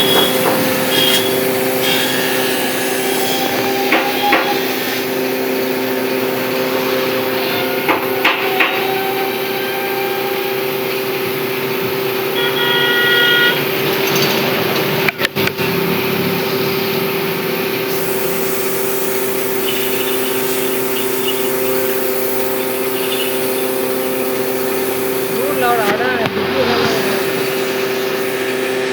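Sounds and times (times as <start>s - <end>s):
machine hum: 0.0s - 28.9s
sharp knocks: 7.9s - 8.8s.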